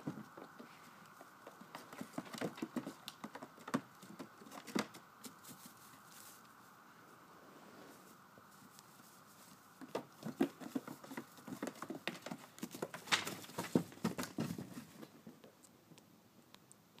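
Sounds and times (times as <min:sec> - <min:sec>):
goat hooves clattering on floor: 0:00.0 - 0:06.0, 0:09.4 - 0:15.5.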